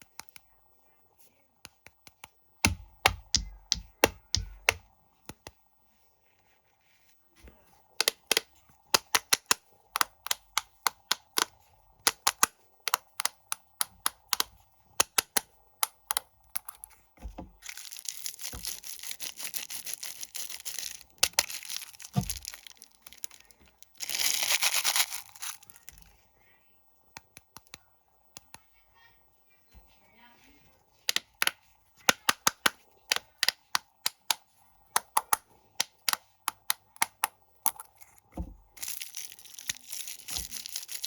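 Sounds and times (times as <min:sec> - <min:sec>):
plastic wrappers crinkling and tearing: 0:17.6 - 0:26.1, 0:38.8 - 0:41.0.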